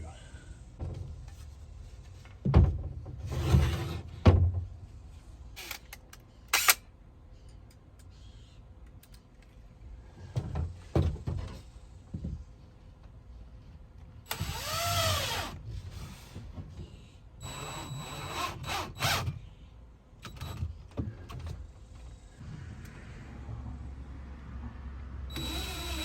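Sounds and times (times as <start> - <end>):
thumps and knocks: 2.3 - 3.2.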